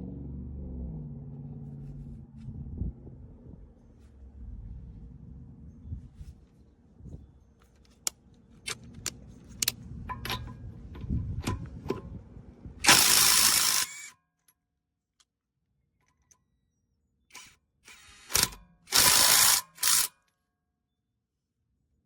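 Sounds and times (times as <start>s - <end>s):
metal clicks and clinks: 8.7s - 12.0s
impact wrench burst: 12.8s - 14.1s, 17.3s - 20.1s.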